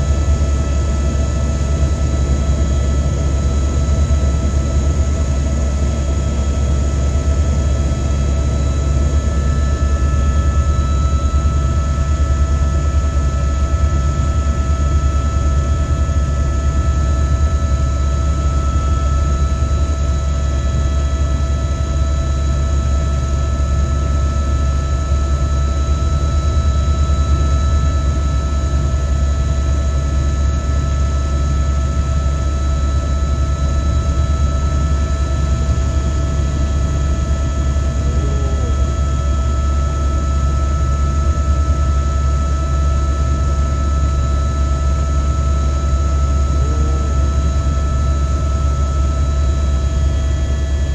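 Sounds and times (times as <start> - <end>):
helicopter rotor drone: 0.0 - 50.9
turbine whine: 0.0 - 50.9.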